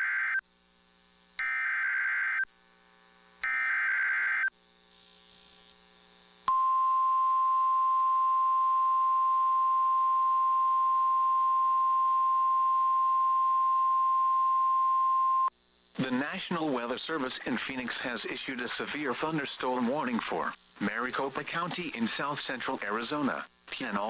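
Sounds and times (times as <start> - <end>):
buzzy digital data bursts: 3.3 - 6.4.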